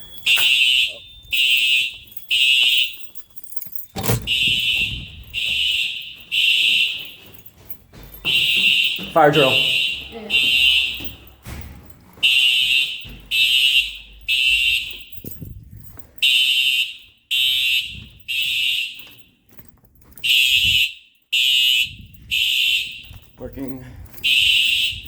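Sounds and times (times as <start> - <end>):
fire alarm horn blasts: 0.0 - 3.0, 4.0 - 7.2, 8.2 - 11.3, 12.2 - 15.1, 16.2 - 19.0, 20.2 - 23.2, 24.2 - 25.0.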